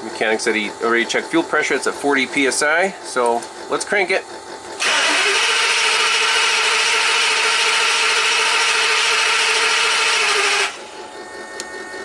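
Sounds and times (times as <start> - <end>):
engine cranking on starter: 4.8 - 10.9.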